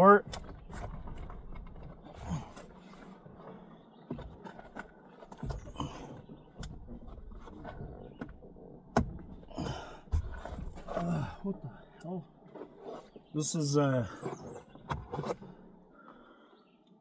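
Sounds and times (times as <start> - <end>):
clicks scrapes and knocks: 12.5 - 13.3, 14.1 - 15.6.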